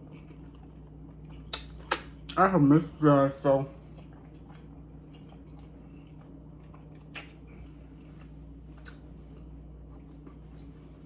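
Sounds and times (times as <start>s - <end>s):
person chewing food: 0.0s - 2.4s, 3.6s - 11.0s
low hum: 0.0s - 11.0s
wet mouth clicks: 1.3s - 2.2s.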